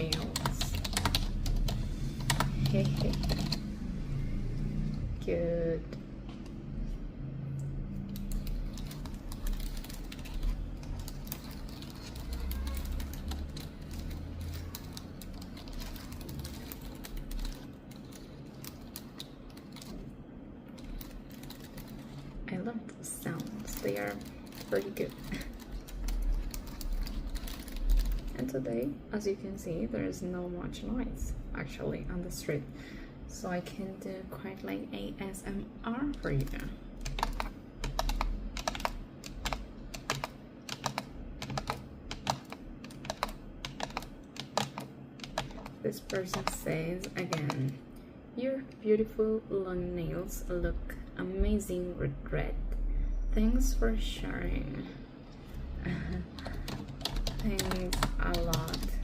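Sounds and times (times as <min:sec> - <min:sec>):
fingernails clicking on keyboard: 0:00.0 - 0:03.7, 0:08.1 - 0:20.0, 0:20.8 - 0:22.3, 0:23.3 - 0:28.4, 0:36.4 - 0:47.8, 0:56.3 - 0:59.0.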